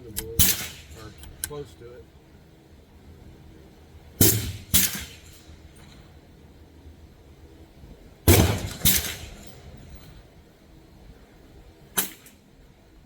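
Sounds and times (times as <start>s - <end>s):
rifle shots: 0.4s - 1.1s, 4.2s - 5.4s, 8.3s - 9.6s.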